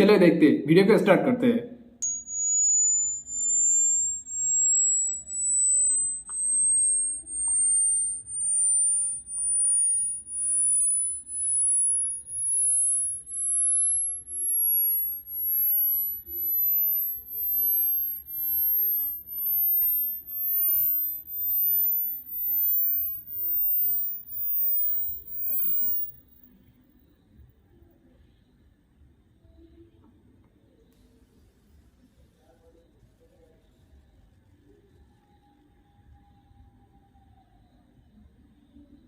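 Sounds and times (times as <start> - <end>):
high sine tone rising in pitch: 2.0 - 26.6.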